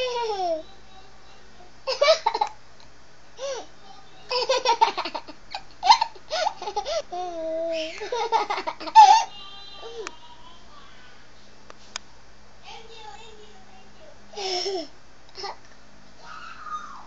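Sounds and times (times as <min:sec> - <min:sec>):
baby laughing: 0:01.9 - 0:02.6, 0:04.3 - 0:09.3.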